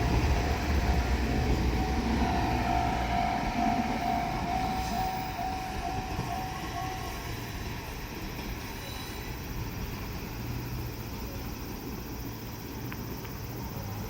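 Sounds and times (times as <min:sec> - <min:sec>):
railcar rumbling over rails: 0:00.0 - 0:14.0
level crossing bell ringing: 0:00.2 - 0:07.2.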